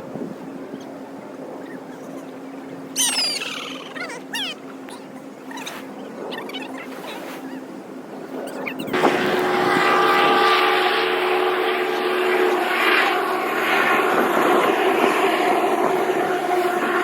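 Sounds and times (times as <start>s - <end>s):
loud engine drone: 8.9s - 17.0s
rushing noise: 9.0s - 17.0s.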